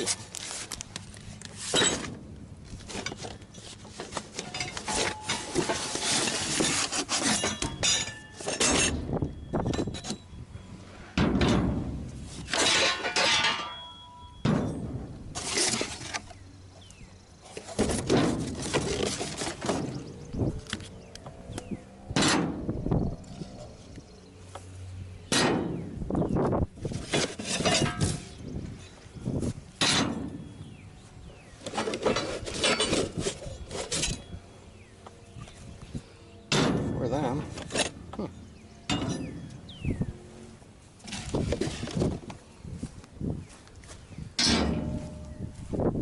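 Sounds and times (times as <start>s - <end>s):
steel parts clinking and clattering: 1.0s - 2.2s, 2.8s - 10.4s, 12.4s - 16.4s, 26.9s - 29.0s, 31.6s - 34.4s, 36.5s - 38.2s, 38.9s - 39.6s
wind on microphone: 19.9s - 24.0s, 25.7s - 31.4s, 39.2s - 40.5s, 41.1s - 46.0s.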